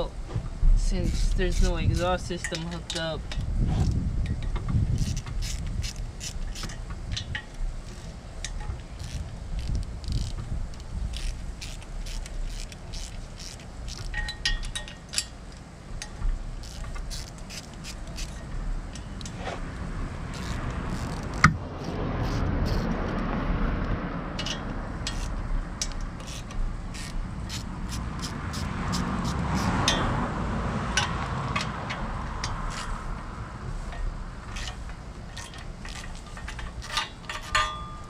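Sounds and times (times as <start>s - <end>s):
steady rushing noise: 0.0s - 38.0s
ratchet tool clicks: 1.0s - 19.4s, 20.3s - 22.8s, 24.4s - 30.2s, 30.9s - 33.0s, 33.9s - 38.0s
metallic clinks: 33.9s - 38.0s.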